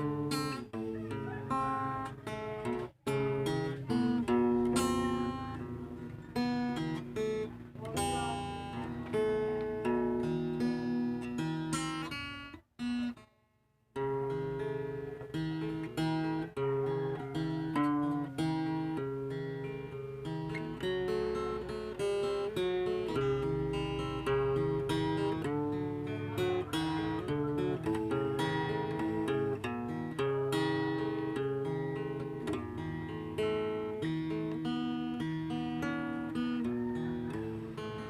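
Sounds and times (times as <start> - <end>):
fingerstyle guitar melody: 0.0 - 38.0.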